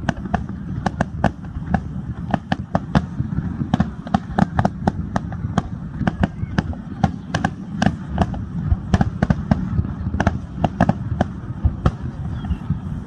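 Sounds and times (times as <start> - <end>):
firework cracks: 0.0 - 13.0
low rumble of booms: 0.0 - 13.0.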